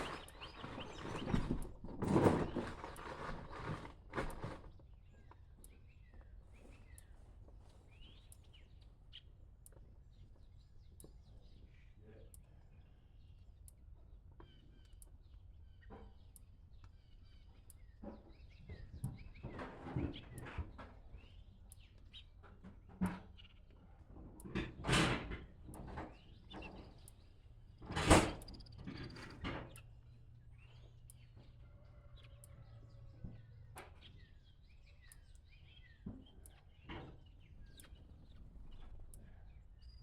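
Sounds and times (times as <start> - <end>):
knocks and rustles: 0.0 - 4.9
birds chirping: 0.0 - 40.0.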